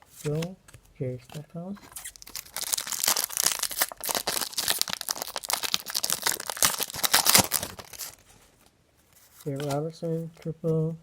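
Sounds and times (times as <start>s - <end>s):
card pack wrapper crinkling and tearing: 1.3s - 8.3s, 9.4s - 9.8s.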